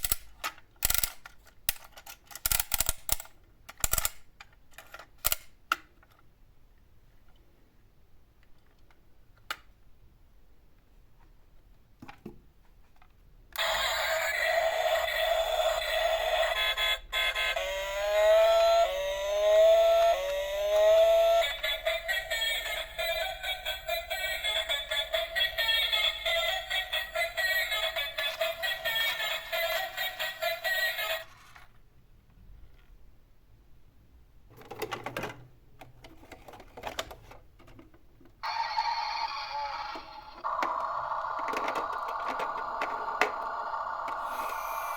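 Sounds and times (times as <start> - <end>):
plastic toy parts clicking: 0.0 - 6.3, 40.6 - 43.4
toy ambulance siren whooping: 13.6 - 31.2, 38.4 - 44.9.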